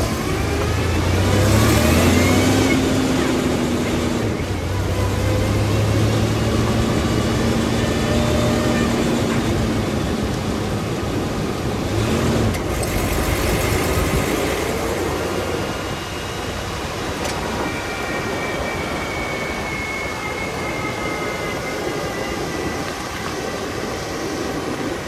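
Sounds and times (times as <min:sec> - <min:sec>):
car engine and road rumble: 0:00.0 - 0:25.0
faint thin whine: 0:13.6 - 0:25.0.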